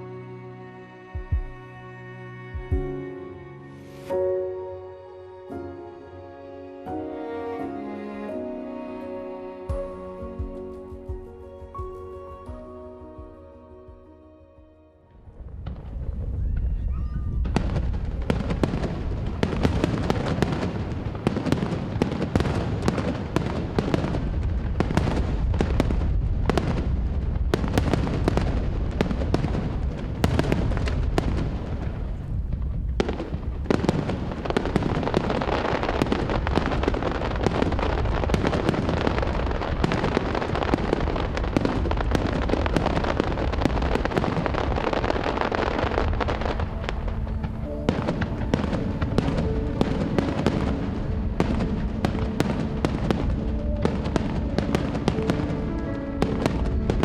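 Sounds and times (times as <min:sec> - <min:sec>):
fireworks booming: 0:15.3 - 0:57.0
fireworks crackling: 0:15.3 - 0:57.0.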